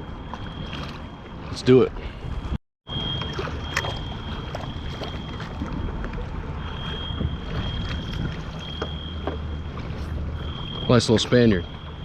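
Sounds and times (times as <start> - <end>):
water lapping against kayak hull: 0.0 - 12.0
high-pitched whine: 2.9 - 12.0.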